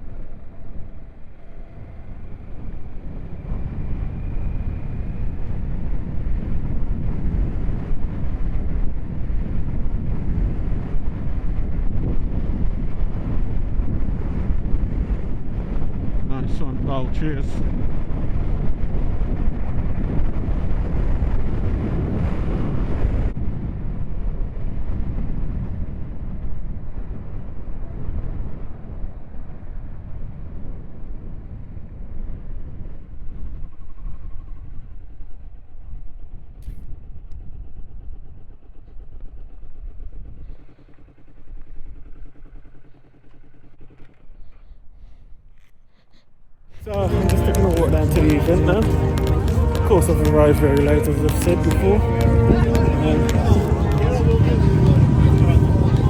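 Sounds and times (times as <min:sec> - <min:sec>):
wind rushing over microphone: 0:00.0 - 0:40.8, 0:46.8 - 0:56.0
motorcycle engine: 0:46.8 - 0:56.0.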